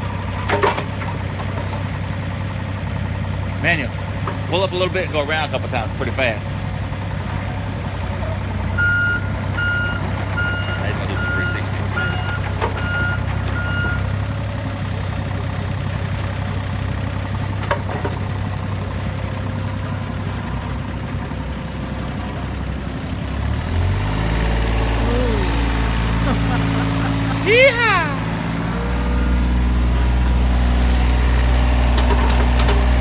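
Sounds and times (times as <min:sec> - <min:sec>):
excavator engine running: 0:00.0 - 0:33.0.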